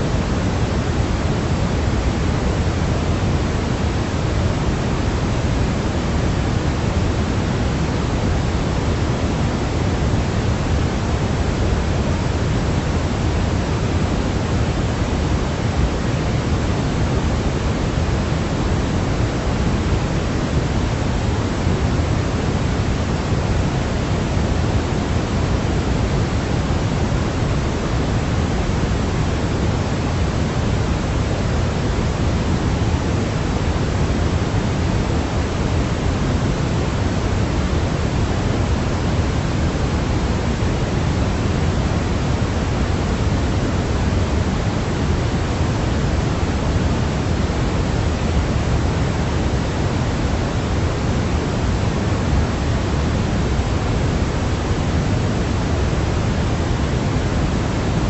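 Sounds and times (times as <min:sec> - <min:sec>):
steady low-heavy hiss: 0:00.0 - 0:58.0.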